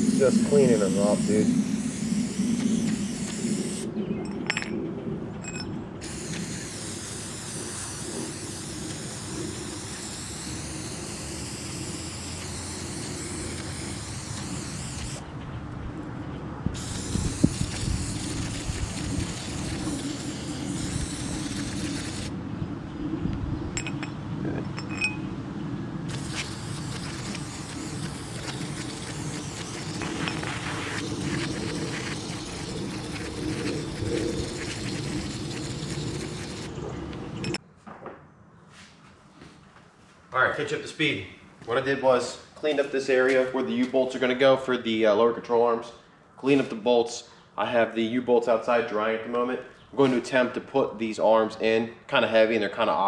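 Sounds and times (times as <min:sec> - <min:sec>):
aerosol can spraying: 0:00.0 - 0:03.9, 0:06.0 - 0:15.2, 0:16.8 - 0:22.3, 0:26.1 - 0:36.7.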